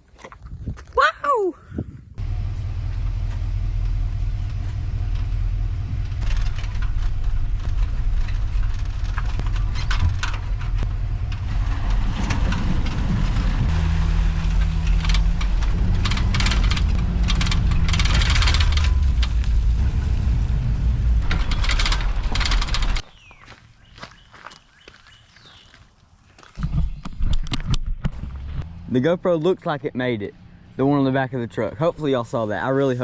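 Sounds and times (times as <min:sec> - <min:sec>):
truck engine and road rumble: 0:00.0 - 0:24.8, 0:25.4 - 0:33.0
wind on microphone: 0:00.4 - 0:02.2
engine drone: 0:02.2 - 0:23.0, 0:28.1 - 0:31.7.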